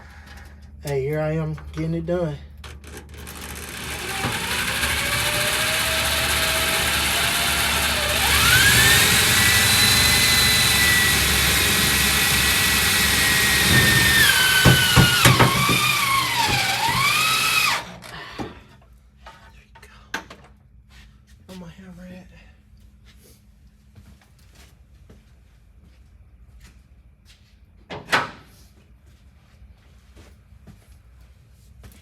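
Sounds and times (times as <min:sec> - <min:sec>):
power tool motor whine: 0:02.9 - 0:18.1
metallic knocks: 0:13.5 - 0:17.0.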